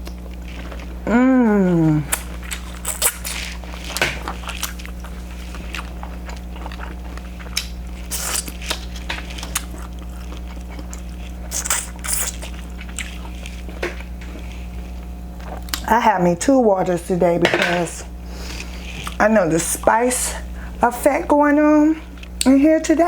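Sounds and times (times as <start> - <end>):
steady low hum: 0.0 - 23.0
chewing with wet smacks: 2.1 - 16.0, 18.6 - 19.3.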